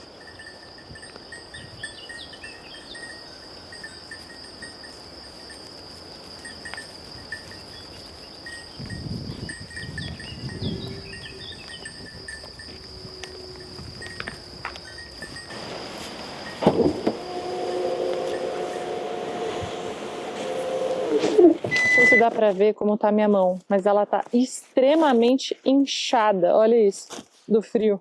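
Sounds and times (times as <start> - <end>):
steady high-pitched whine: 15.4 - 22.3.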